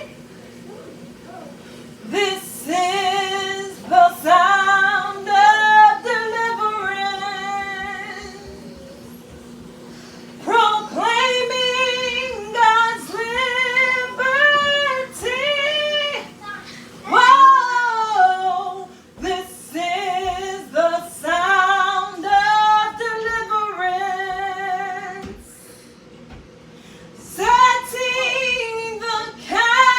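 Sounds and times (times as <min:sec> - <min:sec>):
singer breathing: 0:26.7 - 0:27.2.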